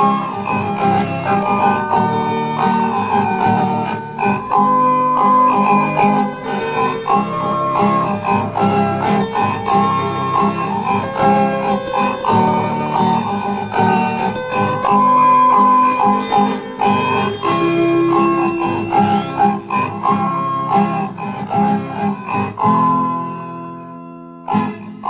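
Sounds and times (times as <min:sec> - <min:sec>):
plucked guitar music: 0:00.0 - 0:25.0.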